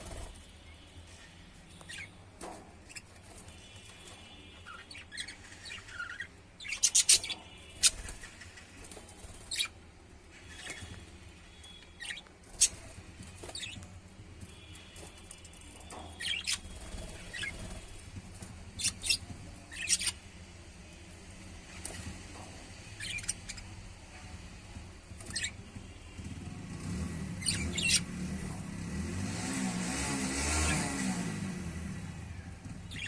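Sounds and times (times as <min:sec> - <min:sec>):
lovebirds chirping: 0:01.2 - 0:02.2, 0:02.8 - 0:09.8, 0:10.4 - 0:13.9, 0:14.6 - 0:18.1, 0:18.7 - 0:20.2, 0:22.8 - 0:23.8, 0:25.2 - 0:25.6, 0:27.4 - 0:28.1
vehicle engine rumble passing: 0:15.4 - 0:33.0.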